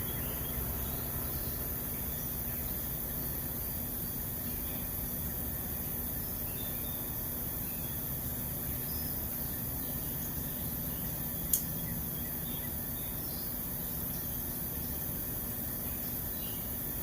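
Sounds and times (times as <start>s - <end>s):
faint bird chirps: 0.0s - 17.0s
steady hiss and low hum: 0.0s - 17.0s
sharp click: 11.5s - 11.7s.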